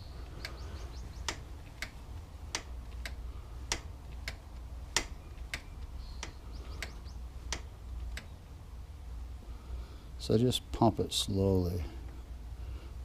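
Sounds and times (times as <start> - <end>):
low steady hum: 0.0 - 13.0
sharp light clicks: 1.2 - 8.3.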